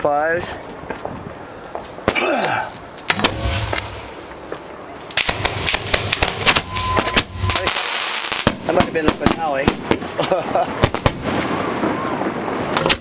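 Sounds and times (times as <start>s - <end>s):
fireworks cracking: 2.8s - 13.0s.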